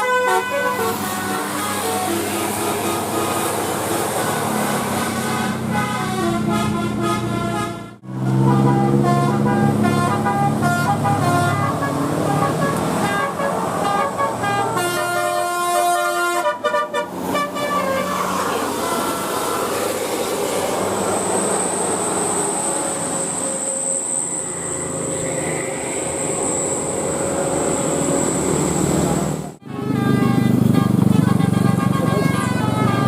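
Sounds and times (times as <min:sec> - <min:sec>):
musical bus air horn: 0:00.0 - 0:20.6, 0:29.6 - 0:33.0
bus engine and road noise: 0:00.0 - 0:33.0
steady high-pitched tone: 0:21.3 - 0:29.4.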